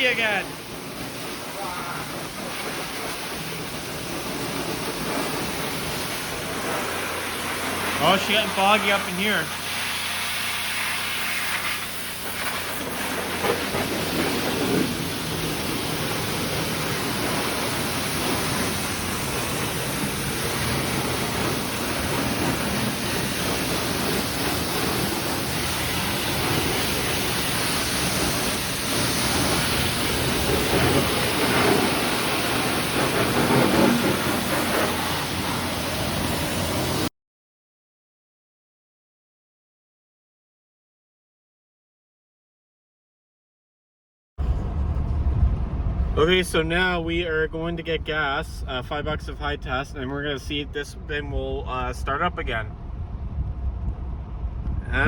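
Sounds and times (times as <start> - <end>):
pressure washer spraying water: 0.0 - 37.1.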